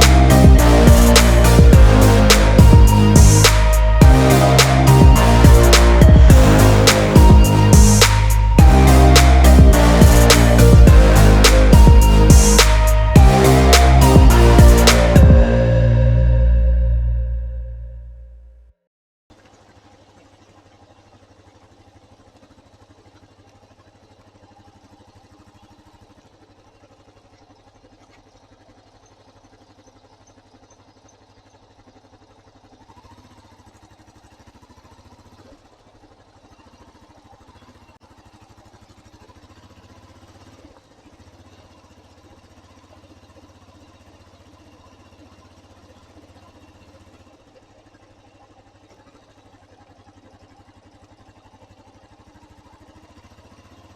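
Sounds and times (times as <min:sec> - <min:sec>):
motorcycle engine running: 0:00.0 - 0:18.4, 0:19.3 - 0:53.9.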